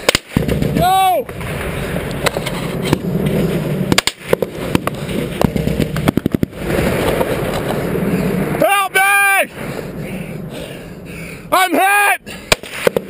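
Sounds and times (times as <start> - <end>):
gunshots: 0.0 - 0.8.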